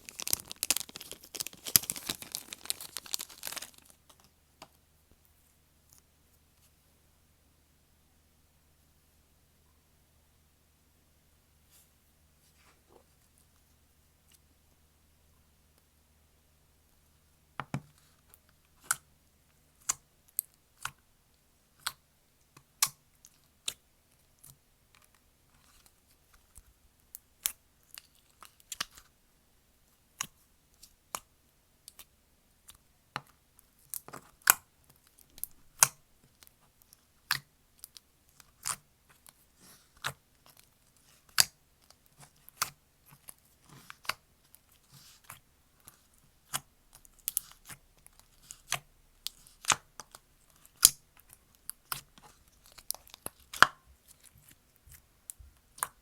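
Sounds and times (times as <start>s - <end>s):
slime clicking and popping: 0.0s - 4.0s.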